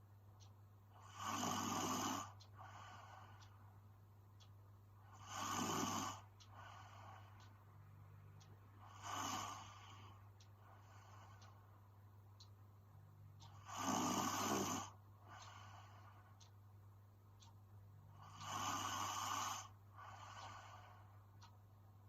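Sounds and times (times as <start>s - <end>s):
steady low hum: 0.0s - 22.0s
woman snoring: 1.0s - 2.4s, 5.1s - 6.3s, 8.9s - 10.1s, 13.6s - 15.0s, 18.2s - 20.8s
quiet breath out: 1.0s - 3.7s, 5.0s - 7.5s, 8.8s - 11.6s, 13.4s - 16.5s, 18.1s - 21.5s.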